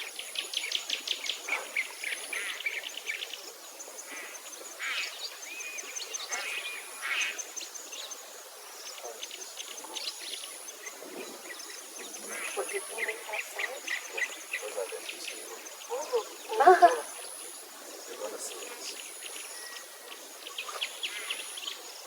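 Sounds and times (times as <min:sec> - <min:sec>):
birds chirping: 0:11.5 - 0:19.9.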